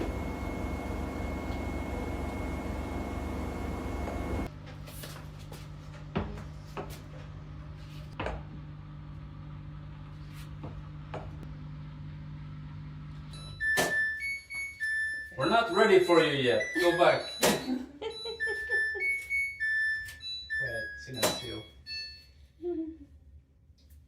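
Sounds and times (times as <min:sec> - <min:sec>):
steady low hum: 0:00.0 - 0:13.4
chime-like tones: 0:13.4 - 0:22.5.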